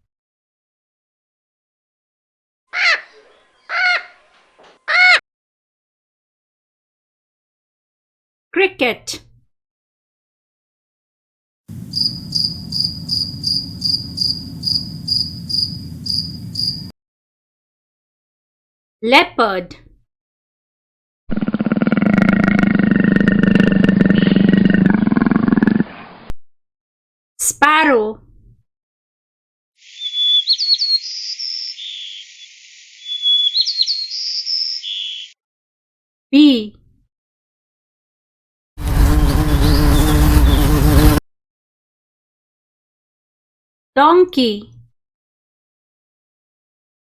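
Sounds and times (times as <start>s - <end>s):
cricket chirping: 11.7s - 16.9s, 29.8s - 35.2s
sparrow singing: 11.8s - 16.9s, 29.8s - 35.4s, 39.4s - 40.9s.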